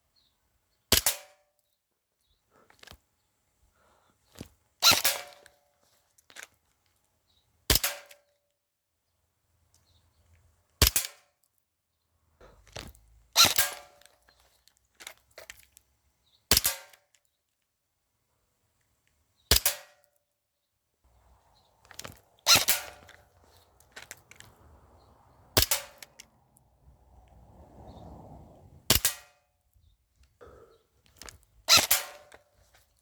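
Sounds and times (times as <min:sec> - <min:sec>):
airsoft gun shots: 0:13.4 - 0:13.9, 0:22.4 - 0:23.2, 0:25.6 - 0:26.1, 0:31.7 - 0:32.4.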